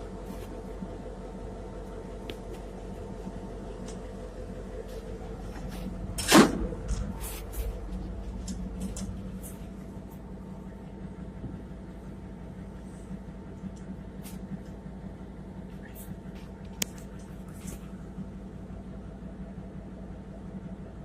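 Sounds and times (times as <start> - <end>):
mechanical hum: 0.0 - 21.0
loud clunk: 5.6 - 7.2.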